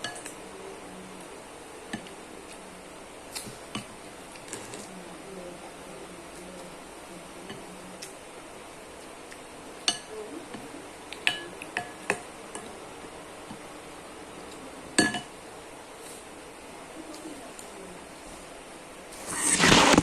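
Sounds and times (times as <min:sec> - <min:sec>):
utensil clinking against a dish: 0:09.8 - 0:10.6, 0:11.2 - 0:12.7, 0:15.0 - 0:15.4.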